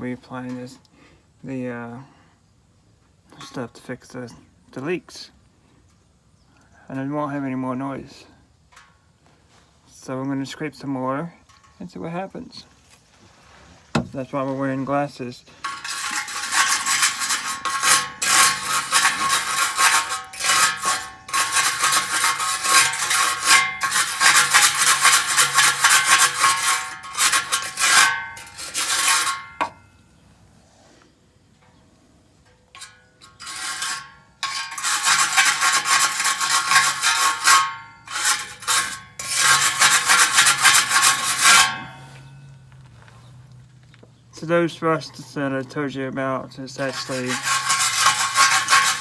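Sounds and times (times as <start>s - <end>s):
wire brush scraping metal: 15.5s - 29.8s, 32.8s - 42.6s, 46.8s - 49.0s.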